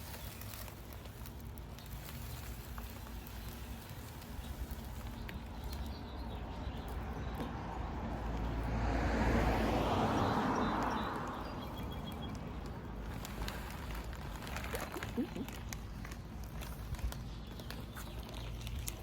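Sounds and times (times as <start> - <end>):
birdseed pouring into feeder: 0.0 - 5.8.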